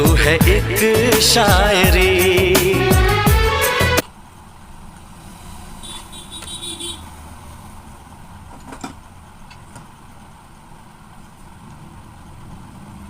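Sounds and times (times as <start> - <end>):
vehicle engine rumble: 4.0 - 13.0.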